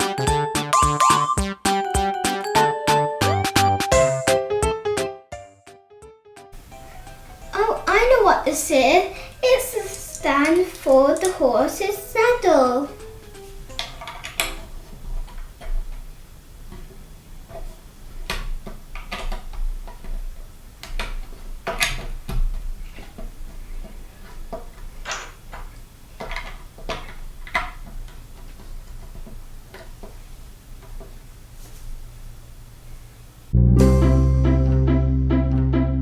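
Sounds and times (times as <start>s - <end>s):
plastic bricks clicking together: 9.8s - 11.4s, 13.7s - 16.1s, 18.2s - 30.2s.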